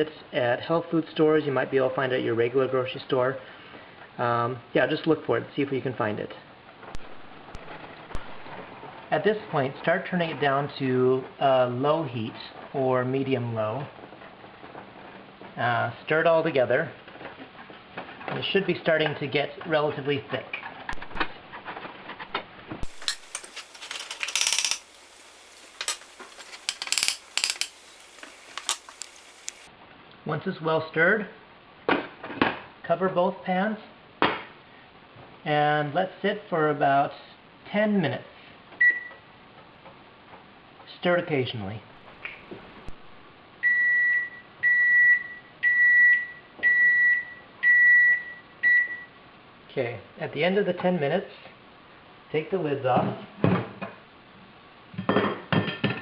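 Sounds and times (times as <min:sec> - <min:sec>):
spoon scraping a pot: 0:22.8 - 0:29.7.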